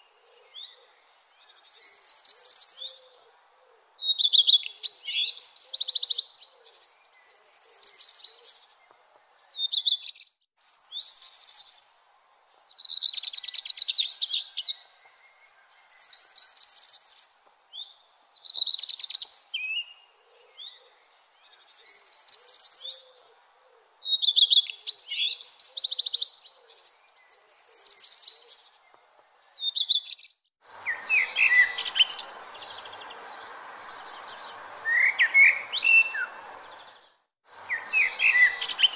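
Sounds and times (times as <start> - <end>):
background hiss: 0.0 - 9.5, 10.1 - 29.6, 30.2 - 38.9
songbird singing: 0.0 - 38.9
birds chirping: 24.0 - 38.9.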